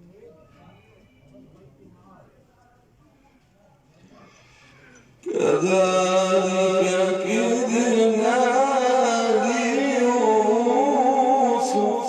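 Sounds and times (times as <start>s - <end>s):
man reciting melodically: 5.2s - 12.0s.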